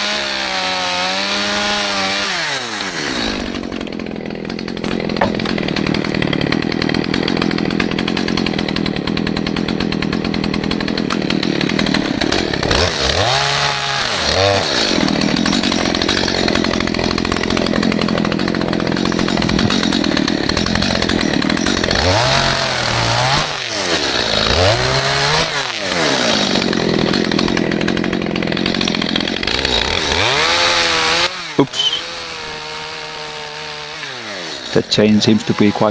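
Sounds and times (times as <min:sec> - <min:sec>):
chainsaw cutting trees: 0:00.0 - 0:35.9.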